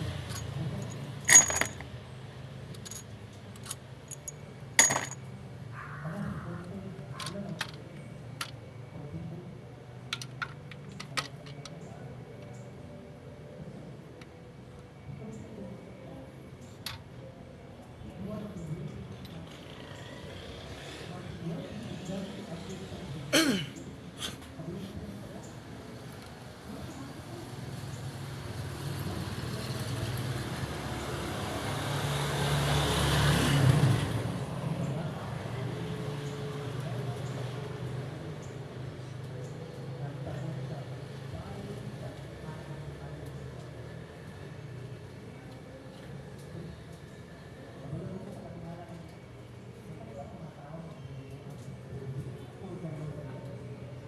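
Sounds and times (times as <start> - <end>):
motor vehicle passing by: 19.4 - 23.2, 24.7 - 45.2.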